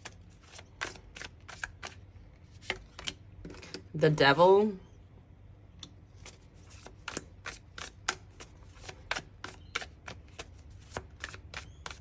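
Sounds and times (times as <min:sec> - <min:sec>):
cards being shuffled: 0:00.0 - 0:02.0, 0:06.2 - 0:12.0.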